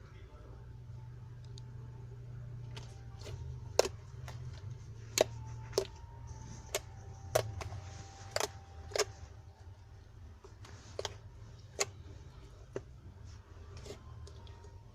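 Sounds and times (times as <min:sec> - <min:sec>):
low steady hum: 0:00.0 - 0:14.9.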